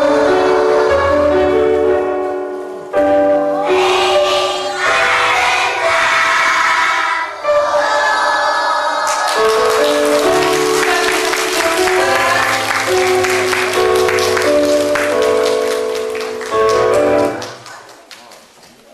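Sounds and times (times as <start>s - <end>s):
children singing together: 0.0s - 1.8s, 3.4s - 9.7s
instrumental accompaniment: 0.0s - 17.8s.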